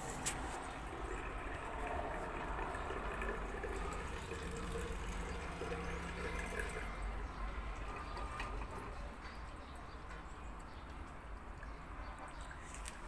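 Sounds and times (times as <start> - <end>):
water rushing in washing machine: 0.0 - 9.2.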